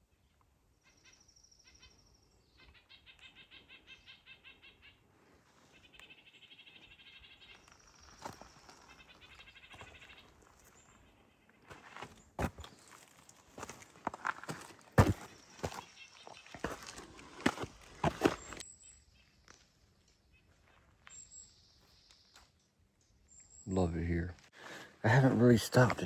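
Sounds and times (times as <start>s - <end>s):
faint songbirds trilling: 0.0s - 25.9s
footsteps on a trail: 7.5s - 18.6s, 24.5s - 26.0s.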